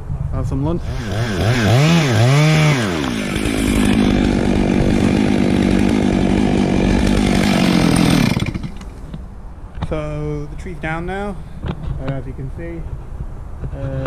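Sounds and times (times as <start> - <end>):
chainsaw cutting wood: 0.8 - 9.2.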